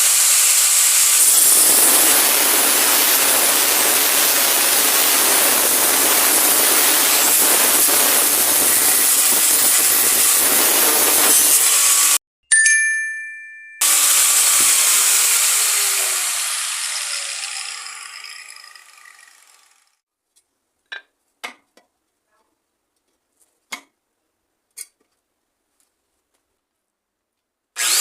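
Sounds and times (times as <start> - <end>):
angle grinder running: 0.0 - 12.2, 13.8 - 20.0, 27.8 - 28.0.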